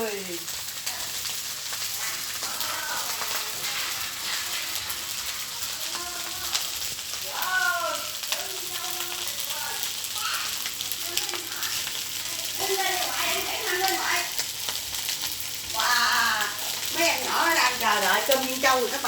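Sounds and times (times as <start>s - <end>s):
faint voices: 0.0s - 14.4s
rice sizzling in a hot pan: 0.0s - 19.0s.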